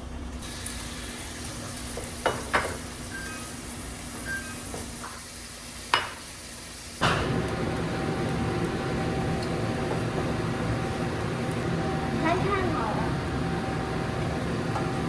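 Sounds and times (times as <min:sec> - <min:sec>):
meat sizzling in a pan: 0:00.4 - 0:11.5.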